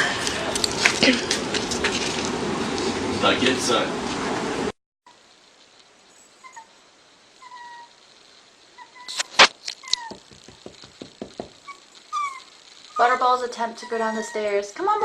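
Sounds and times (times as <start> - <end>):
young pet whimpering: 7.4 - 8.0, 8.8 - 10.2, 11.6 - 15.0
sharp clicks and knocks: 9.1 - 11.8.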